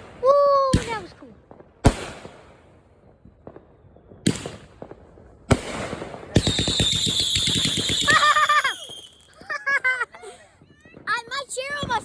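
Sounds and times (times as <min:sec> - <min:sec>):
firework bangs: 0:00.0 - 0:12.0
firework crackle: 0:04.3 - 0:12.0
high falling whistles: 0:06.4 - 0:09.5.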